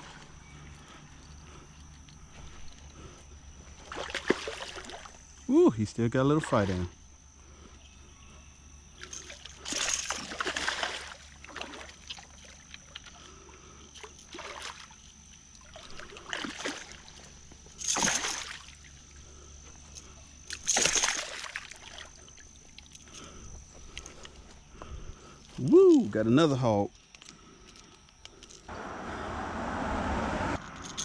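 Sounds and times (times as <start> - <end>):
fish splashing at water surface: 9.6 - 12.0, 17.9 - 18.8, 20.6 - 22.2.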